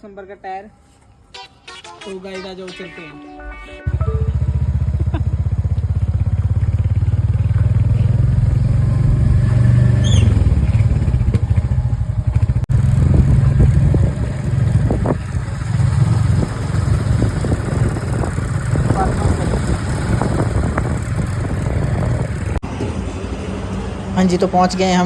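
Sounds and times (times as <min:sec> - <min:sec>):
motorcycle engine running: 0:03.8 - 0:23.4.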